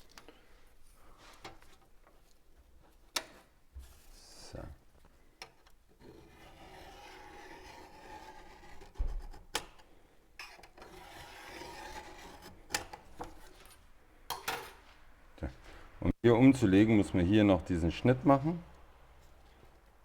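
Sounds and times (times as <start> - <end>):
hand tool scraping sheet steel: 6.0 - 9.8, 10.4 - 13.7.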